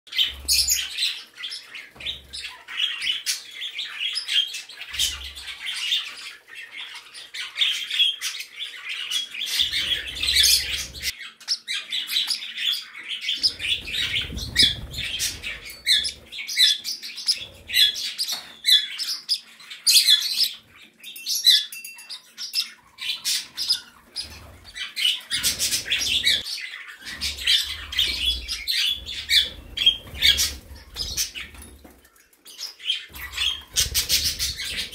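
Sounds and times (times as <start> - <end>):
small birds chirping and chattering: 0.1 - 34.9
bird squawks: 23.1 - 31.6, 33.0 - 34.9.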